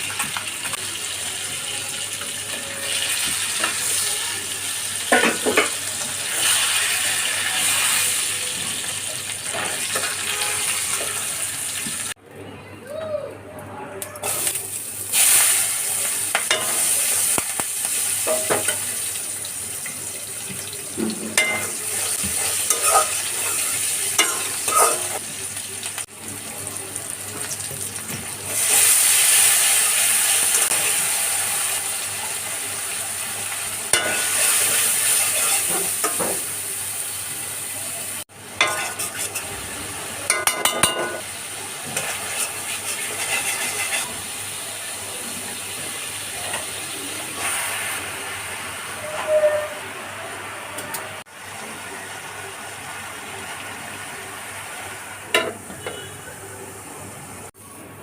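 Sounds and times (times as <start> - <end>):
food sizzling in hot oil: 0.0 - 12.2, 14.2 - 57.4
spatula scraping a pan: 21.3 - 25.2, 34.0 - 36.3, 38.6 - 39.5, 41.9 - 44.2.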